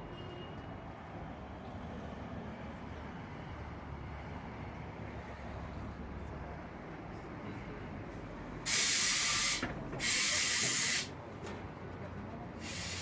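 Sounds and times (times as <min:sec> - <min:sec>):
compressed air hissing from tyre inflator: 0:08.7 - 0:11.1, 0:12.6 - 0:13.0.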